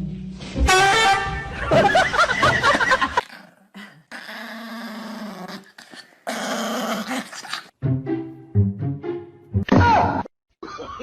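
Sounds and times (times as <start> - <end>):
music: 0.0 - 1.8, 7.8 - 10.2
dog growling: 3.1 - 7.7.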